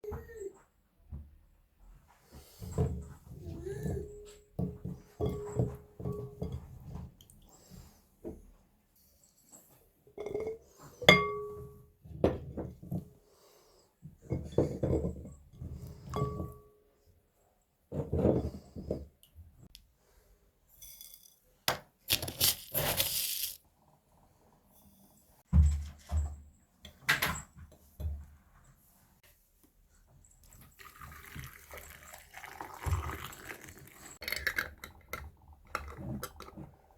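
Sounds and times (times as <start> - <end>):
glassware clinking: 10.2 - 11.7
knocking and handling sounds: 21.0 - 23.6.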